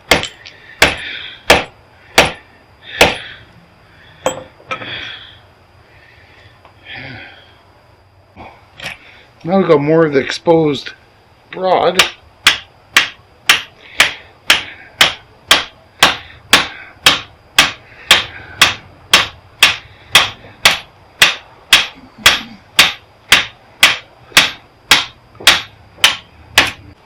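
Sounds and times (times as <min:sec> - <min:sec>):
hammer striking metal: 0:00.1 - 0:02.4, 0:03.0 - 0:03.2, 0:04.2 - 0:04.5, 0:12.0 - 0:26.8.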